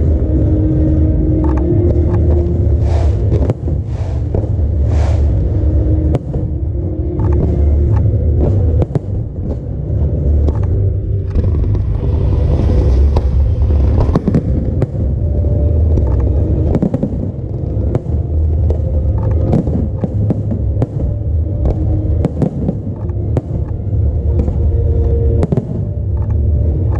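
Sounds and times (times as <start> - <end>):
low rumble of booms: 0.0 - 26.9
hiss: 2.8 - 5.4
fireworks bangs: 2.8 - 6.6, 8.4 - 10.7, 11.3 - 26.2.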